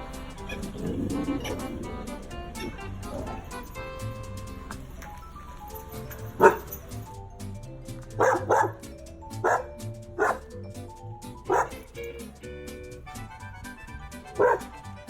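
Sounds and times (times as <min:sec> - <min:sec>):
background music: 0:00.0 - 0:15.0
dog barking: 0:00.4 - 0:03.7, 0:06.4 - 0:06.8, 0:08.2 - 0:08.8, 0:09.4 - 0:10.4, 0:11.5 - 0:11.8, 0:14.4 - 0:14.8.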